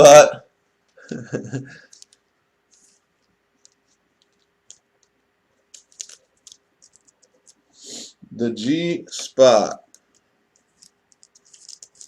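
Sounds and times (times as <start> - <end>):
trading cards clicking and rustling: 1.7 - 7.7, 9.6 - 12.0.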